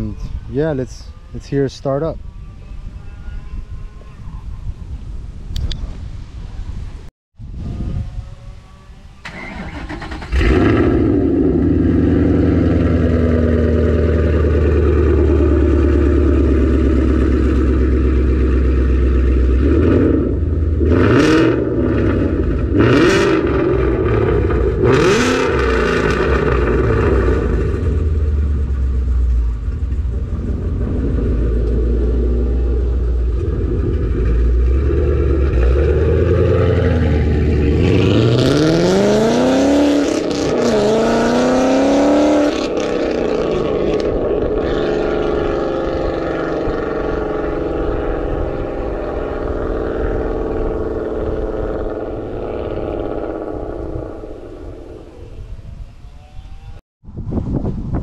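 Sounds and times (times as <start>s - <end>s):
car engine starting and revving: 9.2s - 55.2s.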